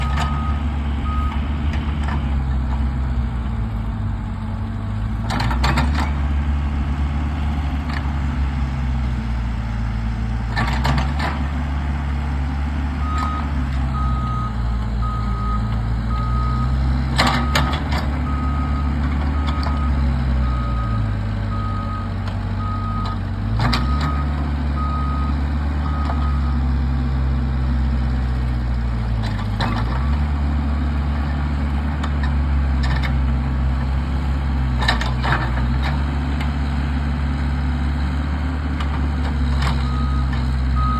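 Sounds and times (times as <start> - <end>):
reversing alarm beeping: 0.0 - 1.4, 13.0 - 16.8, 17.4 - 23.2, 23.8 - 26.6, 39.8 - 40.9
diesel engine revving under load: 0.0 - 40.9.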